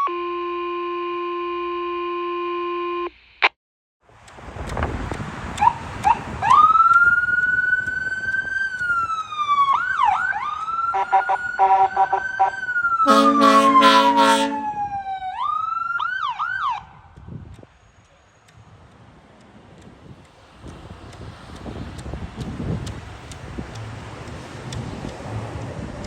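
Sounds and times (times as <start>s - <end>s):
electronic siren wailing: 0.0s - 3.1s, 6.0s - 16.9s
train horn blast: 11.0s - 14.8s
short horn toots: 13.1s - 14.7s.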